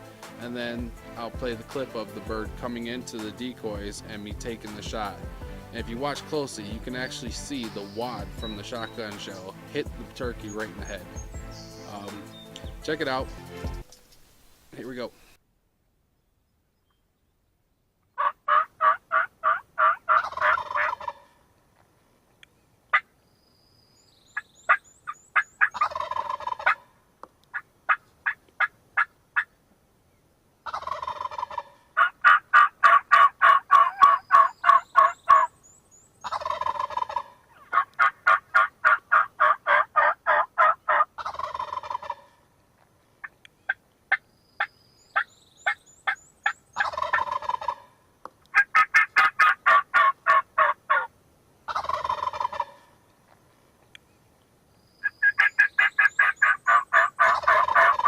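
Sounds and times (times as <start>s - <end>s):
turkey gobbling: 7.8s - 9.5s, 18.2s - 21.4s, 22.9s - 23.1s, 24.7s - 29.6s, 30.6s - 35.5s, 36.2s - 42.5s, 45.2s - 51.1s, 51.7s - 53.0s, 55.0s - 58.0s
fast yelping notes: 55.2s - 58.0s.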